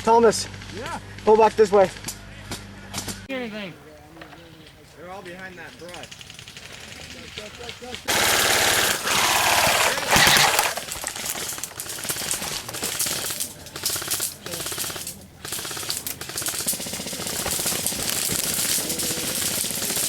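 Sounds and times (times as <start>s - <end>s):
airsoft guns firing full auto: 5.0s - 20.0s.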